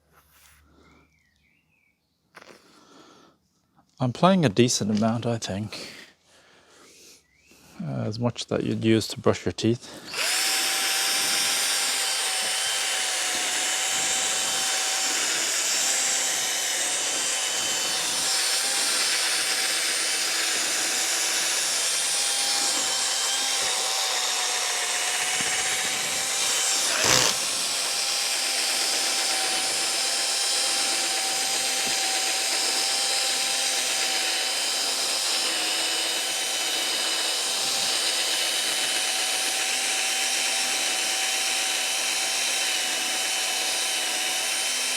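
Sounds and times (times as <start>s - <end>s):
electric drill whining: 9.8s - 44.9s.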